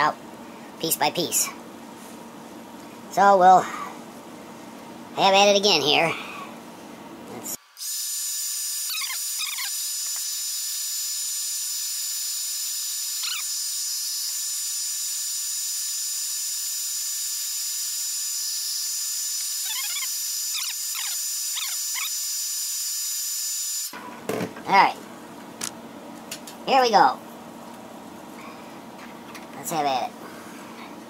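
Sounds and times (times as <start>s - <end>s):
hot-air blower whining hiss: 21.2s - 31.0s.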